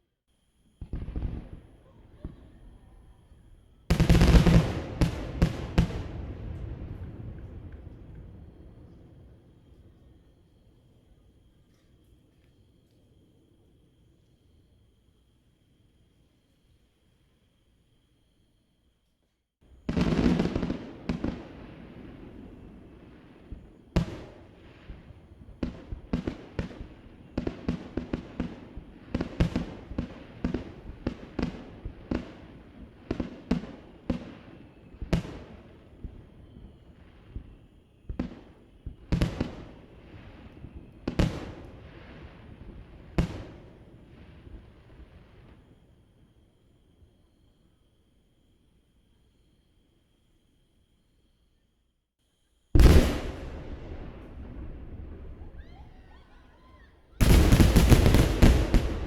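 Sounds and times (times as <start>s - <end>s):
fireworks bursting with echo: 0.8s - 10.2s, 19.7s - 45.7s, 52.8s - 59.0s.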